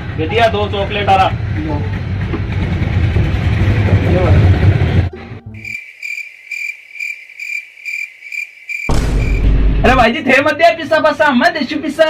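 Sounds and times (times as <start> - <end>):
vehicle rumble: 0.0 - 5.7
cricket chirping: 5.6 - 9.5.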